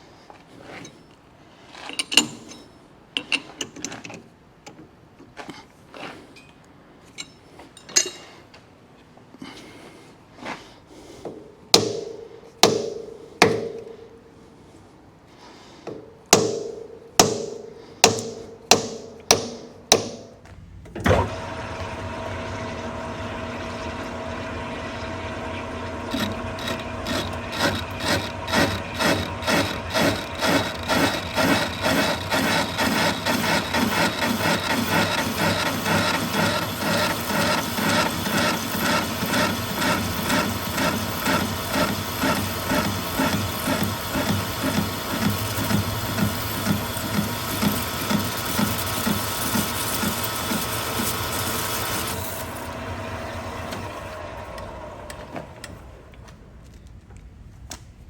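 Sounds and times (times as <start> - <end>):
knocks and taps on metal: 15.9 - 20.3
lathe running: 21.3 - 55.6.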